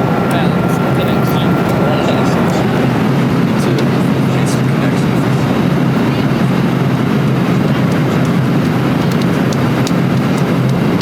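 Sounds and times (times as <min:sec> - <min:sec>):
jet engine and airflow rush: 0:00.0 - 0:11.0.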